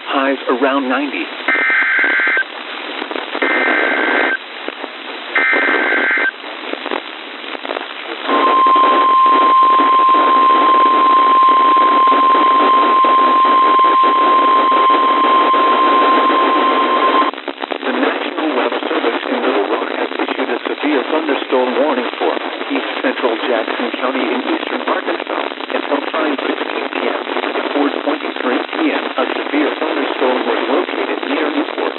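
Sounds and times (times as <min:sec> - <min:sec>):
radio static hiss: 0:00.0 - 0:31.9
data burst tones: 0:03.4 - 0:04.4, 0:05.4 - 0:06.3, 0:08.2 - 0:17.3
steady warning alarm tone: 0:08.3 - 0:17.3.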